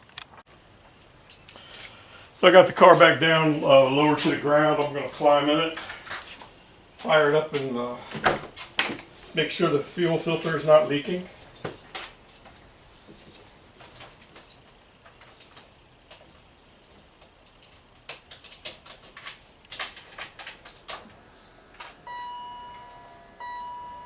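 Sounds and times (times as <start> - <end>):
keys jangling: 1.2 - 2.4, 10.4 - 21.1
car warning chime: 21.2 - 24.0.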